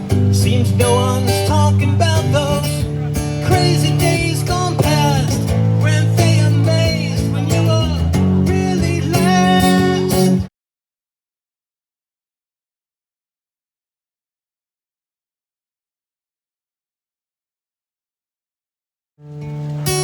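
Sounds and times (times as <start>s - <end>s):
acoustic guitar music: 0.0s - 10.5s, 19.2s - 20.0s.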